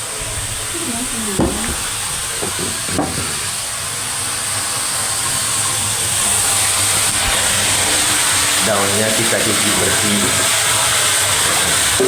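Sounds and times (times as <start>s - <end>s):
stove hissing: 0.0s - 12.0s.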